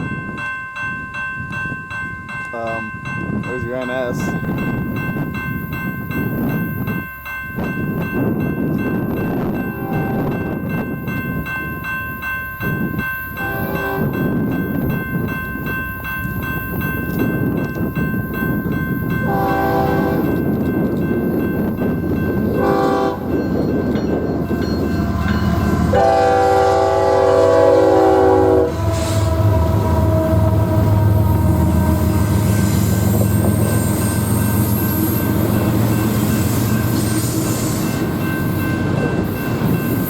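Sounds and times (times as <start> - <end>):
passing train rumble: 0.0 - 40.0
locomotive horn: 9.8 - 10.5, 13.4 - 14.2, 19.2 - 20.4, 22.6 - 23.4, 25.1 - 34.2.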